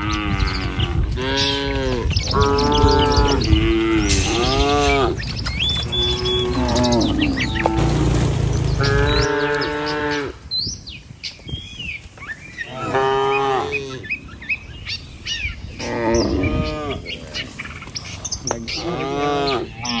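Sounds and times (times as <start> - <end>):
cattle mooing: 0.0 - 10.5, 12.7 - 14.0, 18.5 - 20.0
small birds chirping: 0.0 - 20.0.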